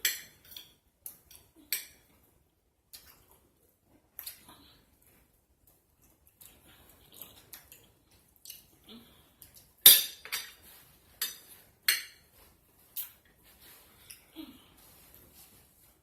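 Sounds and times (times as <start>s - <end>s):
cutlery clinking on a dish: 0.0s - 2.1s, 9.8s - 10.6s, 11.2s - 12.3s.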